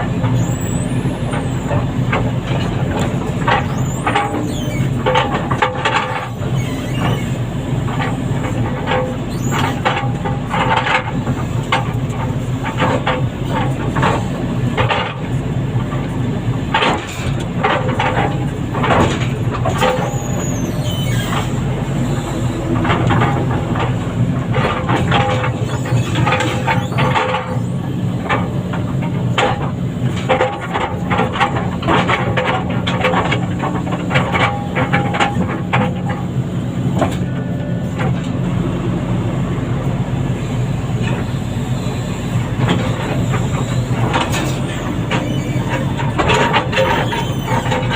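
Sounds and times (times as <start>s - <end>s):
diesel machinery running: 0.0s - 47.9s
metal clanks and knocks: 1.3s - 16.1s, 16.7s - 38.4s, 42.4s - 47.9s
high squeal: 3.7s - 5.0s, 6.3s - 7.4s, 19.9s - 22.7s.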